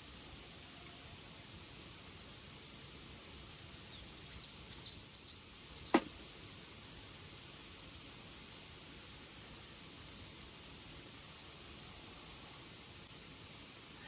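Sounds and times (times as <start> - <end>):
steady background hiss: 0.0 - 14.0
sharp snap: 6.0 - 6.2.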